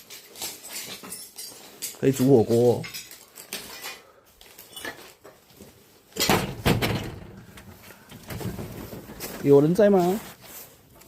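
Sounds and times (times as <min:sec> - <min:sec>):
debris and broken glass clattering: 0:00.0 - 0:04.0, 0:04.6 - 0:05.2.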